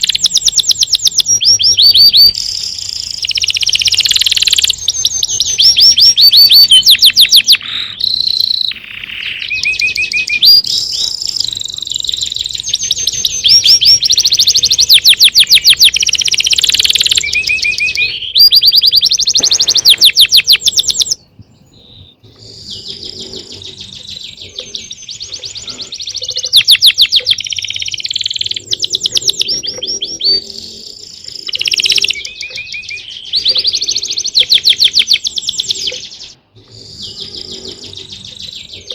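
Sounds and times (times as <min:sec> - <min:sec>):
songbirds chirping and trilling: 0:00.0 - 0:38.9.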